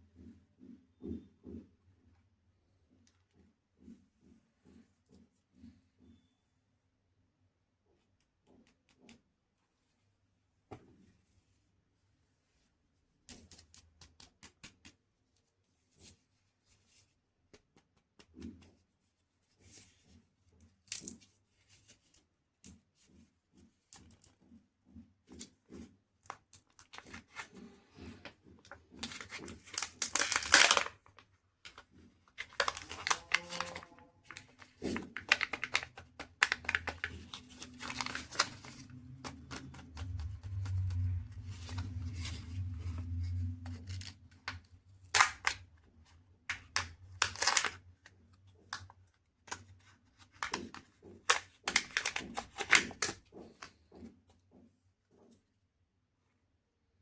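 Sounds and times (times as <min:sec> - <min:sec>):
wrapper tearing: 0:29.0 - 0:31.2, 0:32.4 - 0:38.9, 0:46.6 - 0:47.8
wrapper crinkling: 0:29.0 - 0:42.5, 0:46.6 - 0:47.8.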